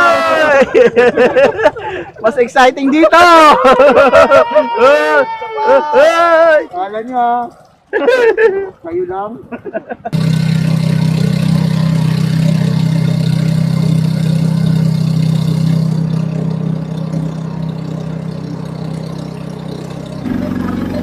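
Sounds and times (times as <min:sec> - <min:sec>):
small boat engine droning: 0:10.1 - 0:21.0.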